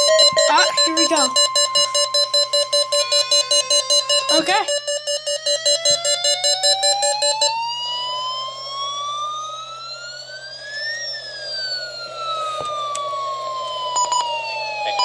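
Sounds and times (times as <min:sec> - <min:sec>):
rapid electronic beeping: 0:00.0 - 0:07.7
siren wail: 0:00.0 - 0:15.0.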